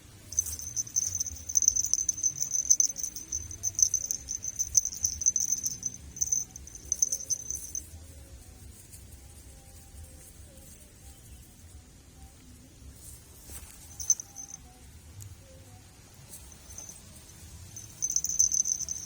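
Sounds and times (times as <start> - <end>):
insect pulsing trill: 0.0 - 8.4, 13.6 - 14.9, 16.0 - 19.0.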